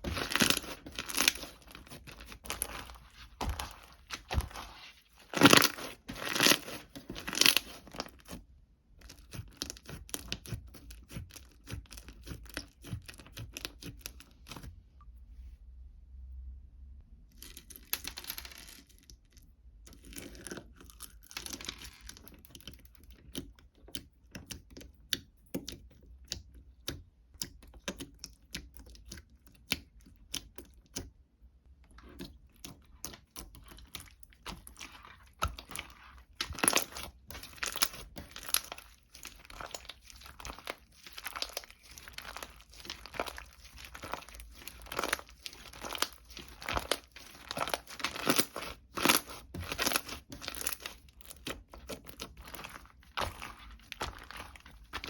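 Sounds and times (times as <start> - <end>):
paper or plastic crinkling: 0.0 - 8.4, 33.6 - 55.0.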